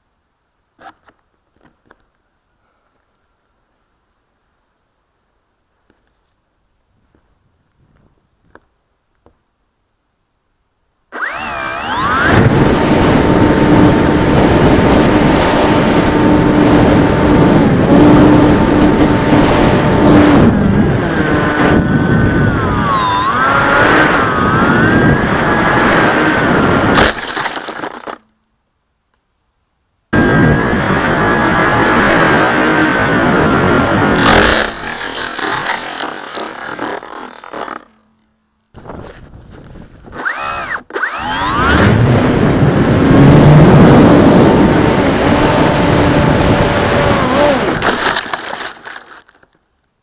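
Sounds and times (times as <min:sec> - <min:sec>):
wind noise on microphone: 0:06.9 - 0:08.6, 0:11.2 - 0:27.2, 0:30.2 - 0:35.8, 0:38.8 - 0:48.1
electric motor whine: 0:11.1 - 0:28.2, 0:30.2 - 0:38.1, 0:40.0 - 0:49.3.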